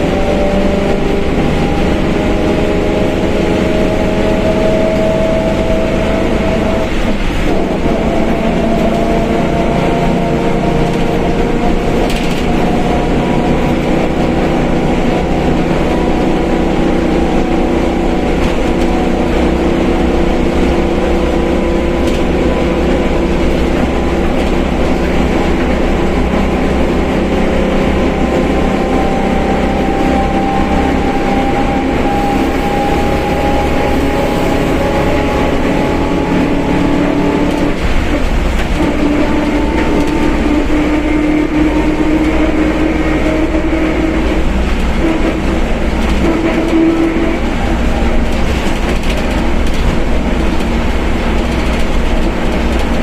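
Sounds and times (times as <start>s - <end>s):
bus differential droning: 0.0s - 53.0s
drivetrain rumble: 0.0s - 53.0s.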